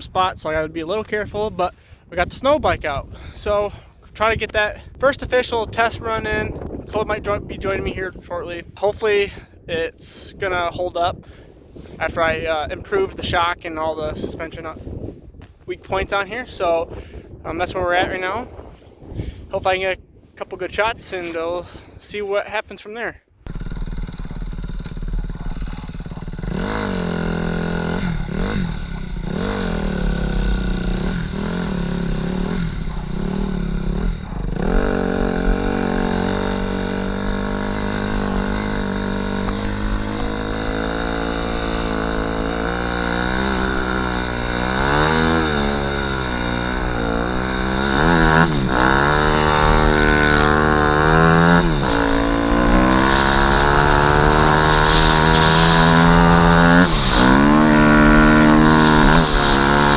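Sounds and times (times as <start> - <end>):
dirt bike engine revving: 23.5 - 59.9.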